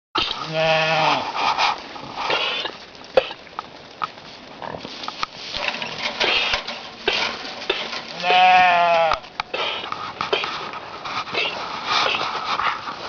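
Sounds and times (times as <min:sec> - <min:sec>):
goat bleating: 0:00.2 - 0:01.3, 0:07.8 - 0:09.9
goat coughing: 0:02.3 - 0:03.5, 0:09.4 - 0:10.6, 0:11.3 - 0:12.3.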